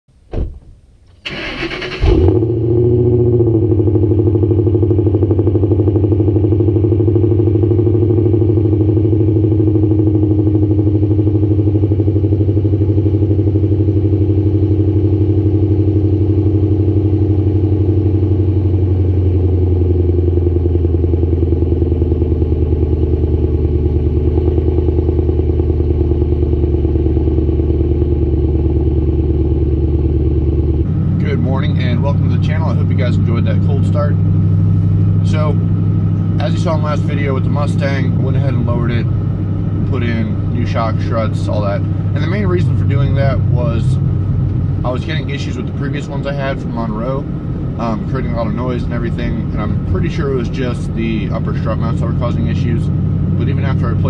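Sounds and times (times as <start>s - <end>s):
starter motor cranking: 1.2s - 2.4s
car engine revving and idling: 1.2s - 54.0s.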